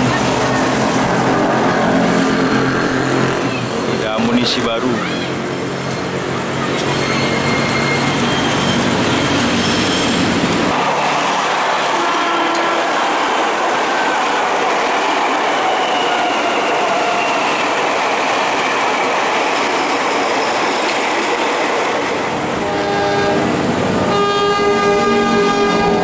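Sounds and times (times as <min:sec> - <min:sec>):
train rumbling past: 0:00.0 - 0:26.0
locomotive horn blast: 0:10.8 - 0:12.9, 0:22.6 - 0:26.0.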